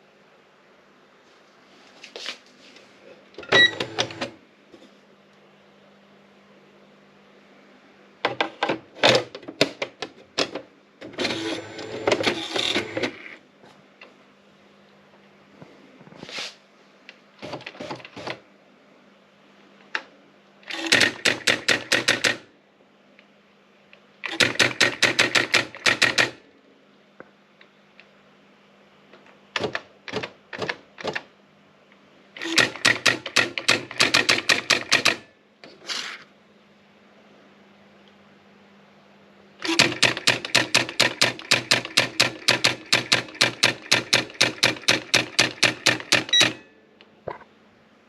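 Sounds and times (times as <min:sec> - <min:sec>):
typewriter printing strikes: 0:03.4 - 0:04.4, 0:11.0 - 0:13.3, 0:20.7 - 0:22.4, 0:24.2 - 0:26.4, 0:32.4 - 0:35.3, 0:39.6 - 0:46.7.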